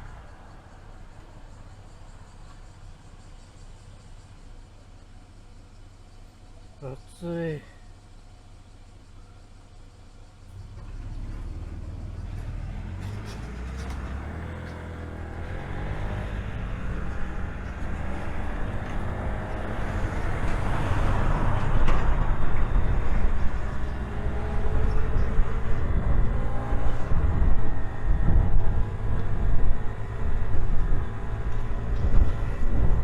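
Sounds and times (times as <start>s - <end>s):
wind and road noise on microphone: 0.0s - 3.7s, 10.5s - 33.0s.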